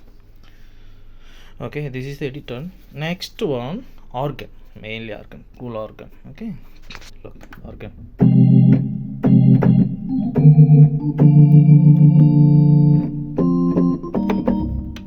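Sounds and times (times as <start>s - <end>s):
organ chords on keyboard: 8.2s - 15.0s.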